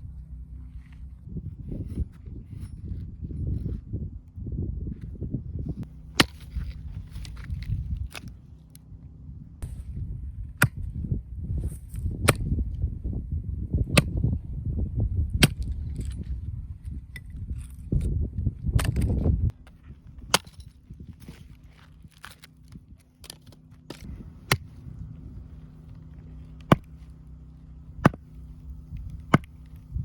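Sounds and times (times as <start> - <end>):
low rumble: 0.0 - 30.0
axe striking firewood: 5.8 - 8.4, 10.6 - 10.9, 11.9 - 12.6, 13.8 - 14.3, 15.3 - 16.2, 18.8 - 22.5, 23.2 - 24.8, 26.0 - 27.3, 27.9 - 30.0.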